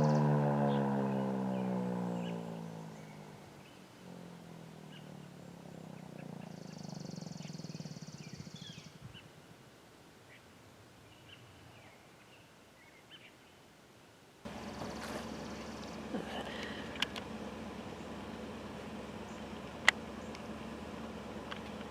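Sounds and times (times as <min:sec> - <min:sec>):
siren low moan winding down: 0:00.0 - 0:02.8, 0:14.5 - 0:20.5
small birds chirping: 0:00.0 - 0:04.0, 0:04.6 - 0:09.4, 0:14.5 - 0:21.9.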